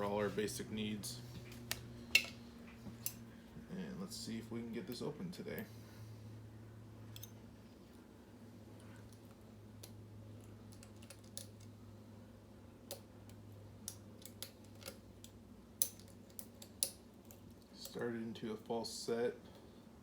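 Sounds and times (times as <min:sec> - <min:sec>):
steady low hum: 0:00.0 - 0:20.0
small metal clicks of lock picking: 0:10.7 - 0:11.7, 0:12.9 - 0:17.7.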